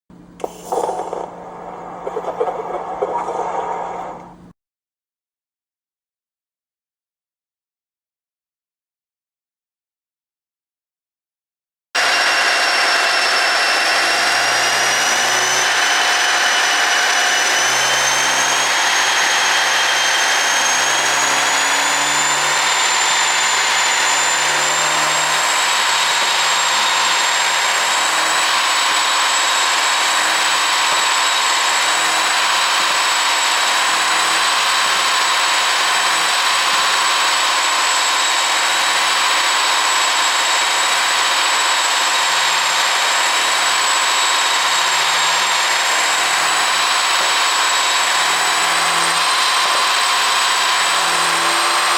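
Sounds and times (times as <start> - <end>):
car engine whining: 12.0 - 38.2.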